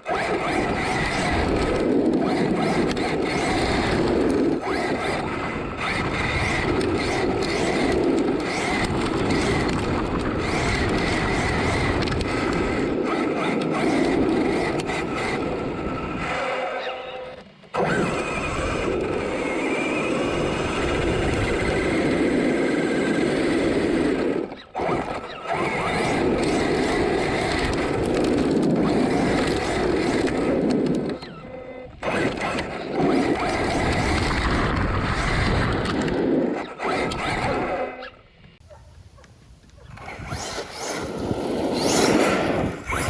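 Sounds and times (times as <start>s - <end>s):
rumble of tyres and wind: 0.0s - 43.0s
wavering motor whine: 38.7s - 43.0s.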